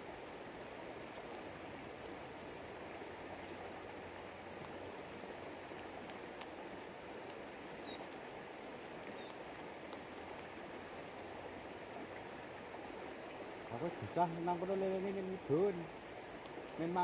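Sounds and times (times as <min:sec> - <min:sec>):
river water rushing: 0:00.0 - 0:17.0
faint ticks: 0:01.1 - 0:02.2, 0:04.4 - 0:11.2, 0:16.4 - 0:17.0.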